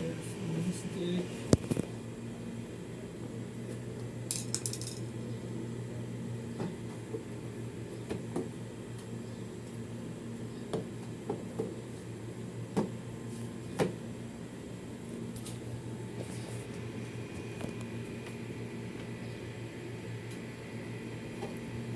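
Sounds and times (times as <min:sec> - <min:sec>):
steady low hum: 0:00.0 - 0:21.9
tools clicking and knocking: 0:04.3 - 0:05.0.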